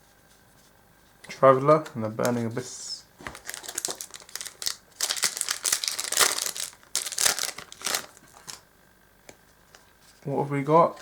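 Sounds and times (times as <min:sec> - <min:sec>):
foil wrapper crinkling and tearing: 0:03.2 - 0:08.6.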